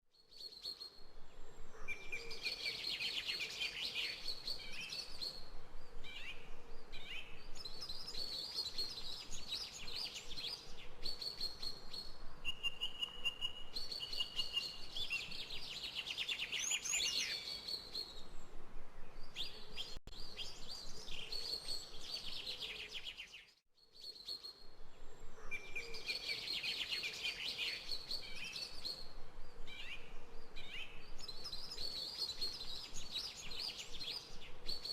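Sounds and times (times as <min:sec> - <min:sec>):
birds singing and chirping: 0:06.1 - 0:18.4, 0:25.3 - 0:34.9.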